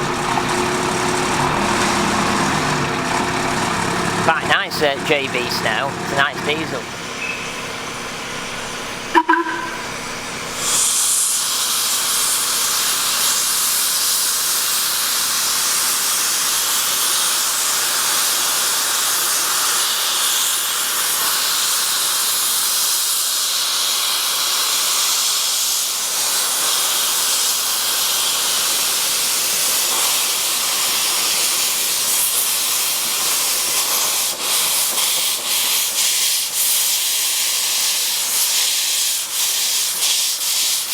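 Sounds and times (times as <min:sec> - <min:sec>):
locomotive whistle toot: 0:09.1 - 0:10.0
steam locomotive hissing steam: 0:09.9 - 0:40.9.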